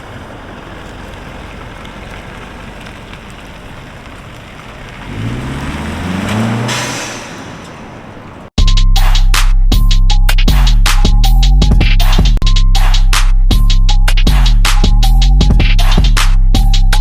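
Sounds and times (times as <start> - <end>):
car engine accelerating: 0.0 - 8.6
road traffic noise: 0.0 - 8.6
music: 8.6 - 17.0.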